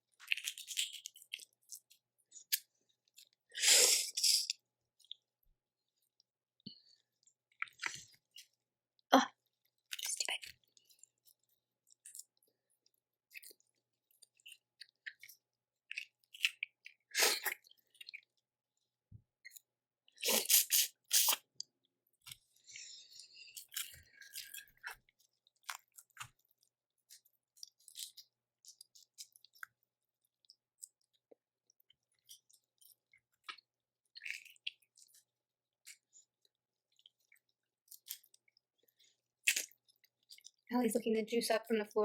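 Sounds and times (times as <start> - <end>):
person chewing: 0.1 - 5.2, 5.9 - 8.6, 9.5 - 40.7
seafood shells crackling: 21.4 - 26.4.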